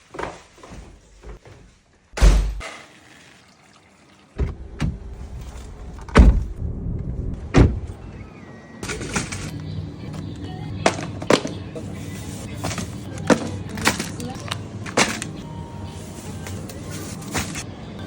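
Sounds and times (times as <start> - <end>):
loud thuds: 2.2 - 2.6, 6.0 - 8.0
low background rumble: 4.4 - 8.3.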